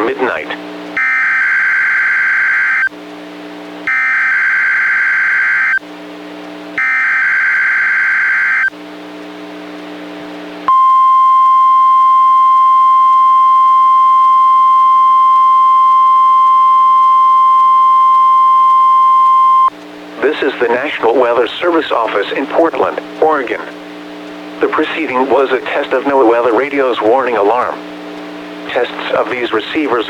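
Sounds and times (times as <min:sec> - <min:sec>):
steady alarm tone: 0:01.0 - 0:02.9, 0:03.8 - 0:05.8, 0:06.8 - 0:08.7, 0:10.7 - 0:19.7.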